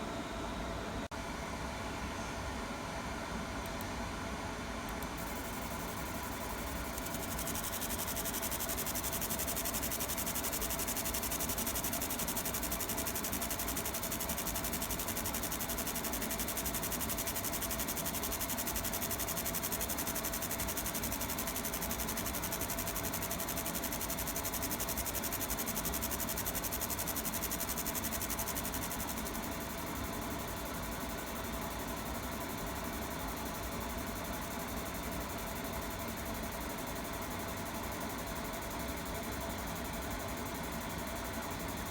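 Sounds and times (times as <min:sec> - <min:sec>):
cooling fan hum: 0:00.0 - 0:34.3
laser engraving high hiss: 0:05.2 - 0:30.8.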